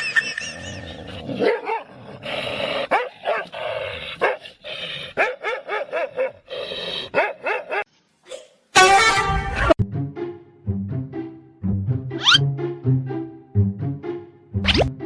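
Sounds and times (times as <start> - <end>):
dog barking: 1.4 - 1.9, 2.9 - 3.5, 4.2 - 4.4, 5.2 - 6.4, 7.1 - 7.9.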